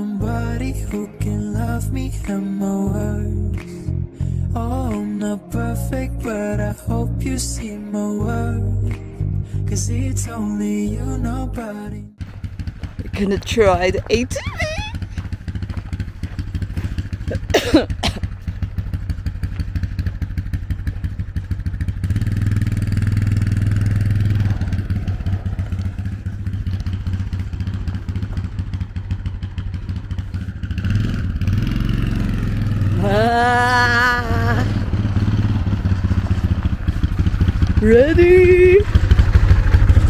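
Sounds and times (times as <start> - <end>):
atv engine droning: 0.0 - 11.5, 12.2 - 40.0.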